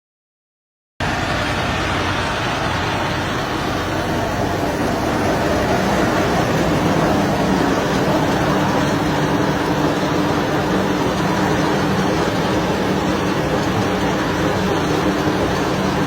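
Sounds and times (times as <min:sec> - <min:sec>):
tractor engine running: 0:01.0 - 0:16.0.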